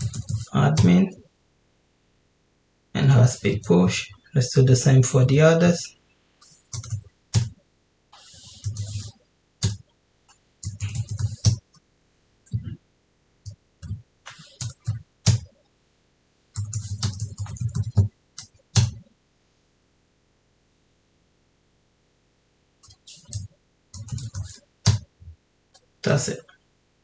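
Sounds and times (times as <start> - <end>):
typing on computer keyboard: 0.0 - 0.9, 6.4 - 7.6, 8.2 - 9.8, 10.6 - 11.8, 13.8 - 15.6, 16.5 - 19.0, 22.8 - 25.1.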